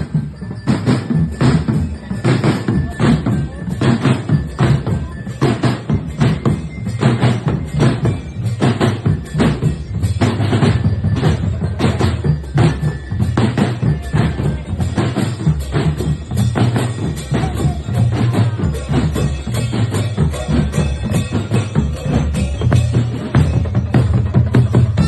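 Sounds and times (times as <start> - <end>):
marching drum band playing: 0.0 - 25.0.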